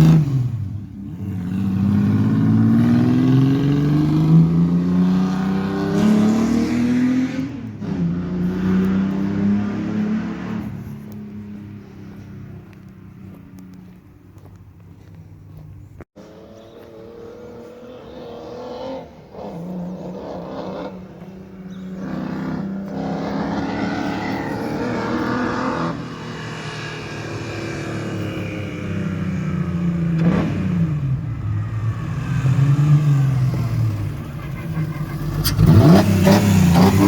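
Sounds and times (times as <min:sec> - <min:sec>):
car engine revving hard: 0:00.0 - 0:10.9, 0:17.0 - 0:37.0.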